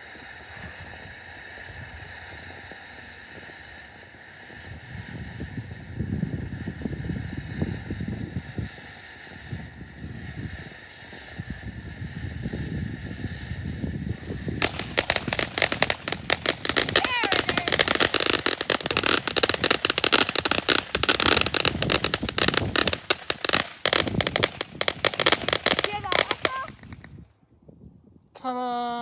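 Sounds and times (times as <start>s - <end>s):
firework hissing: 0.0s - 27.2s
sharp crackling reports: 14.6s - 27.1s.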